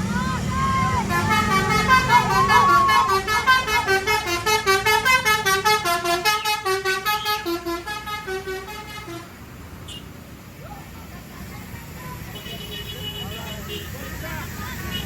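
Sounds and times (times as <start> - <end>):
bus horn multi-note melody: 1.0 - 10.0.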